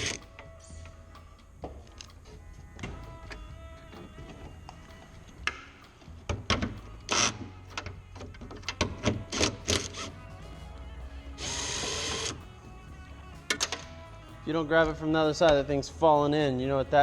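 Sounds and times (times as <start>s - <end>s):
background music: 0.0s - 17.0s
power tool running: 2.8s - 17.0s.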